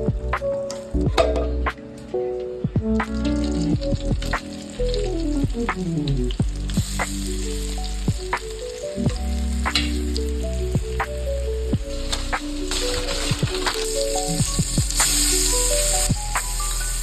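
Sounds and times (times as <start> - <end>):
music with deep bass beat: 0.0 - 1.9, 2.6 - 17.0
food sizzling in a pan: 6.0 - 10.6, 11.6 - 17.0.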